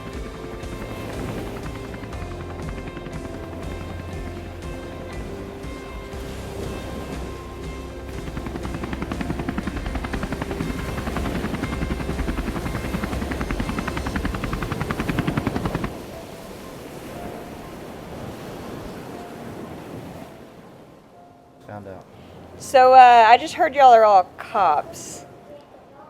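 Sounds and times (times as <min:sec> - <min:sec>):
small engine running: 0:00.0 - 0:16.0.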